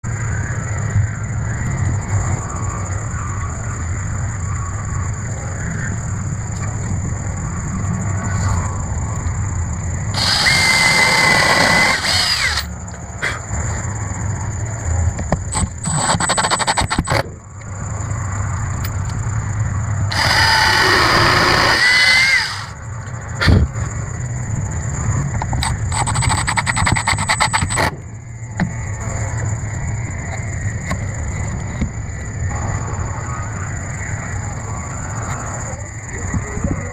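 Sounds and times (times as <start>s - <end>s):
power drill driving screws: 10.2s - 12.7s, 15.8s - 17.1s, 20.1s - 22.7s
rapid clicking: 15.5s - 17.2s, 25.4s - 27.9s.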